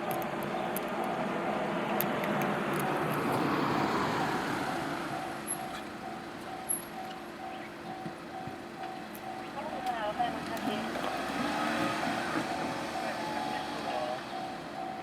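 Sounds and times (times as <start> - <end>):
passing vehicle: 0.0 - 15.0
level crossing bell ringing: 12.4 - 15.0.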